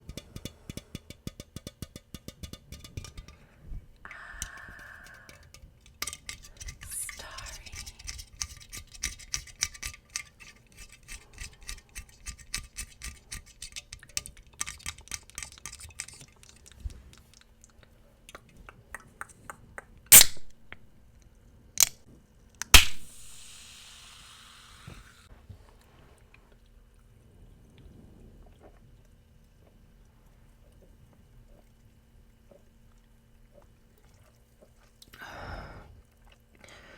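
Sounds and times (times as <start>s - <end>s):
tapping and clicking on can: 0.0s - 3.4s
soda can fizzing hiss: 22.7s - 25.3s
loud sharp cracks: 22.8s - 23.5s.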